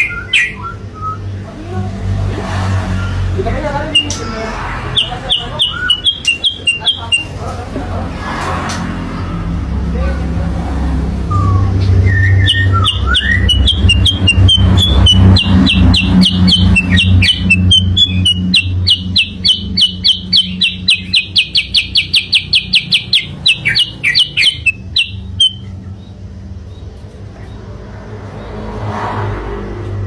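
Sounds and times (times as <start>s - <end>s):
bird chirping: 0.0s - 1.4s, 3.0s - 7.6s, 11.2s - 28.7s.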